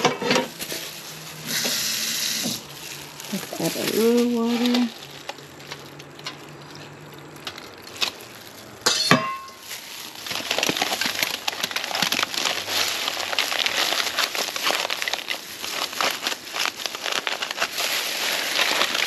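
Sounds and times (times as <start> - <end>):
utensil clinking on pan: 8.9 - 9.6.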